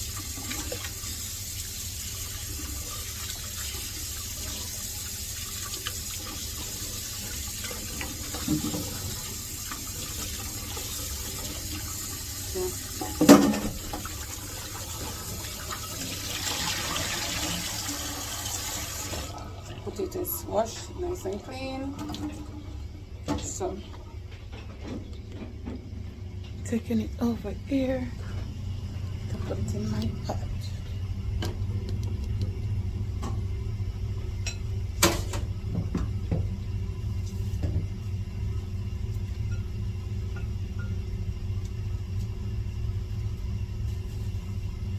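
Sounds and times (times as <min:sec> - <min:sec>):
kitchen tap running: 0:00.0 - 0:24.0
steady low hum: 0:19.3 - 0:44.9.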